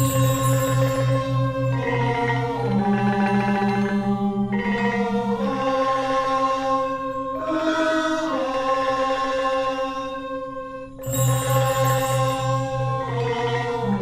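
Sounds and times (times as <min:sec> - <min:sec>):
gamelan metallophone tones: 0:00.0 - 0:01.3.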